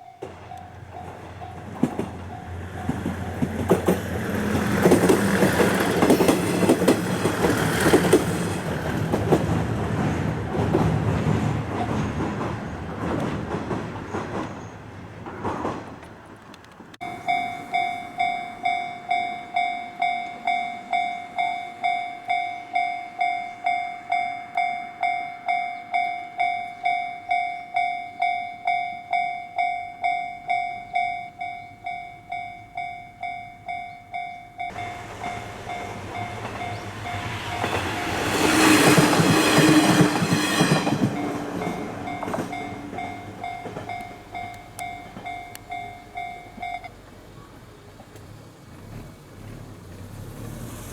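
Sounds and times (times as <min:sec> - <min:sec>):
level-crossing warning bell: 0:00.0 - 0:08.7, 0:17.0 - 0:47.3
train wheel clatter: 0:00.2 - 0:18.8, 0:34.2 - 0:47.2.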